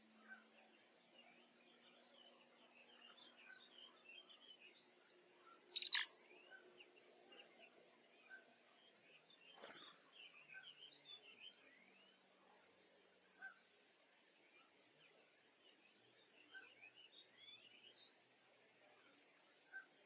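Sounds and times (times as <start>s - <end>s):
small birds chirping: 0.2s - 12.8s.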